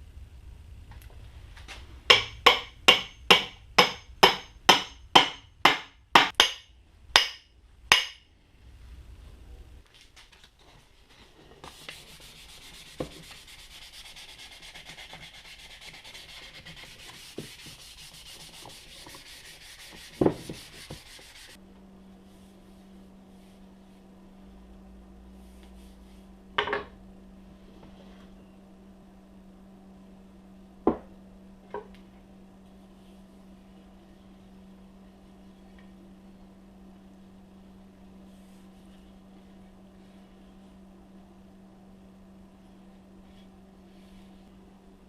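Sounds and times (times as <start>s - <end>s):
sanding on wood: 11.7s - 21.6s.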